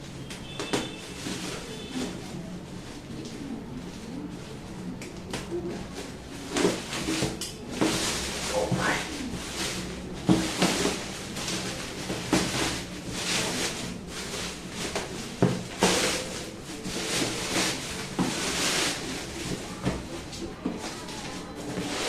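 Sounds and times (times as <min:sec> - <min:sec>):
packaging rustling and scraping: 0:00.1 - 0:22.0.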